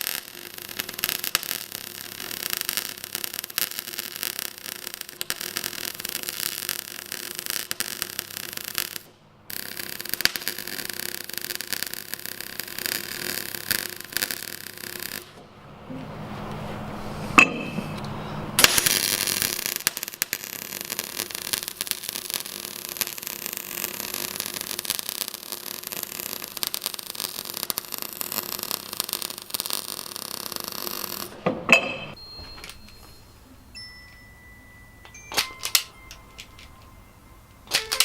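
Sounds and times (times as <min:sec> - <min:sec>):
metal clinks: 0:31.7 - 0:38.0
tool click: 0:35.1 - 0:36.9.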